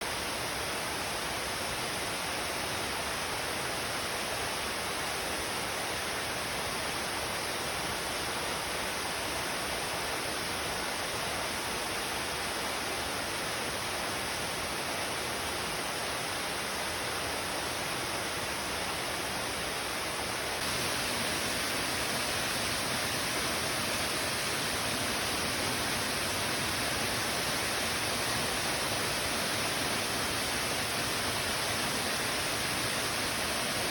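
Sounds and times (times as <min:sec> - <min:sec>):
waterfall rushing: 0:19.6 - 0:33.9.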